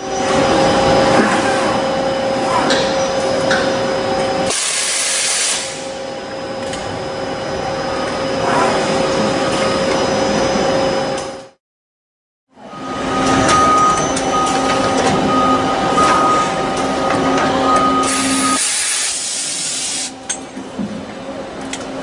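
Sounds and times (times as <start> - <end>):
machine high whine: 0.0 - 11.6, 12.5 - 22.0
machining noise: 12.6 - 20.2
loud hiss: 18.1 - 20.1.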